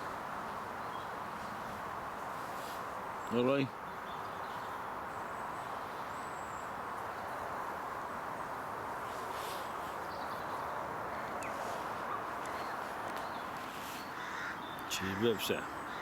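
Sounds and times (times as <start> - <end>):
steady outdoor hiss: 0.0 - 16.0.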